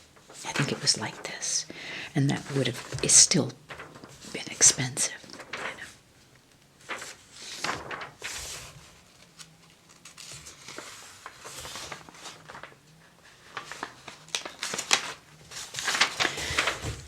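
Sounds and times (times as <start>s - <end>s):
glossy paper pages rustling: 0.0s - 17.0s
sharp paper crackles and taps: 2.3s - 5.9s, 6.6s - 12.8s, 13.4s - 17.0s.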